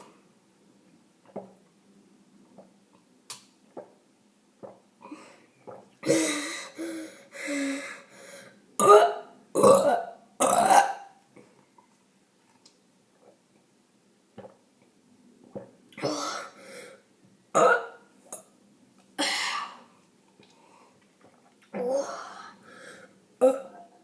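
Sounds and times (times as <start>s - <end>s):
person burping: 8.8s - 11.2s, 17.6s - 18.0s, 23.4s - 23.9s.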